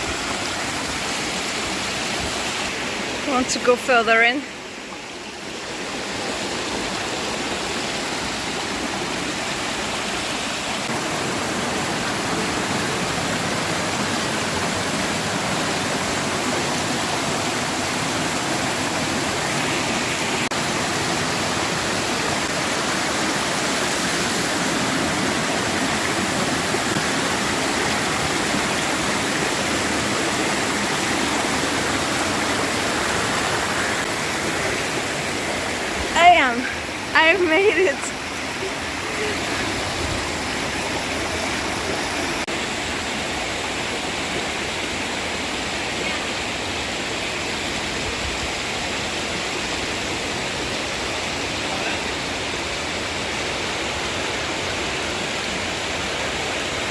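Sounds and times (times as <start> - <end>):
fast-flowing water rushing: 0.0 - 56.9.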